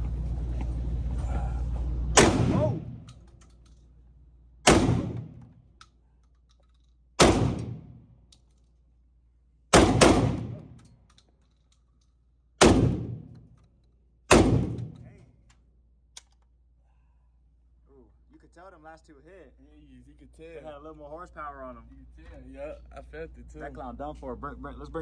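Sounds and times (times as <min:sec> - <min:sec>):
shotgun blasts: 0:02.2 - 0:03.2, 0:04.6 - 0:05.5, 0:07.2 - 0:08.0, 0:09.7 - 0:10.8, 0:12.6 - 0:13.4, 0:14.3 - 0:15.2.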